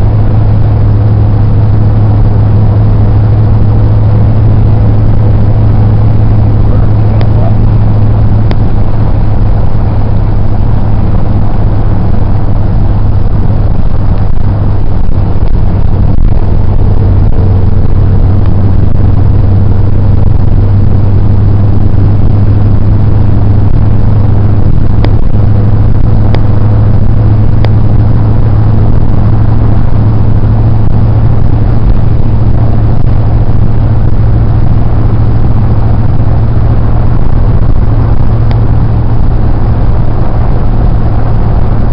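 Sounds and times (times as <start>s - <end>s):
car engine and tyres droning: 0.0s - 41.9s.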